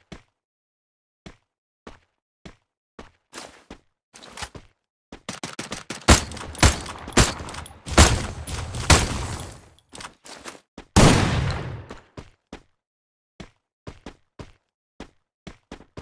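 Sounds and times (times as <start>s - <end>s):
sharp clicks and bangs: 5.3s - 10.2s.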